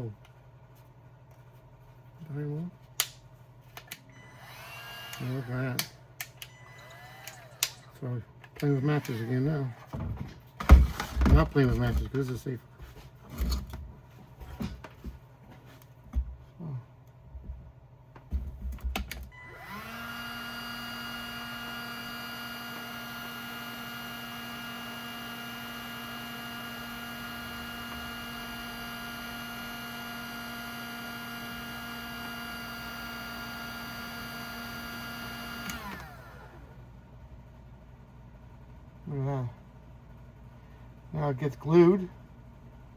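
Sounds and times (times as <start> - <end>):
heat gun fan whine: 3.8 - 10.0, 18.7 - 37.2.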